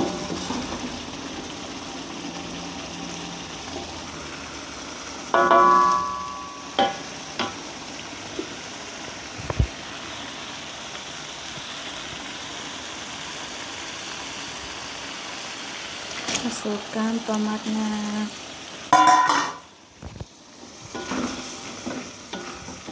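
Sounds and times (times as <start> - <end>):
spice paste sizzling in oil: 0.0 - 22.9.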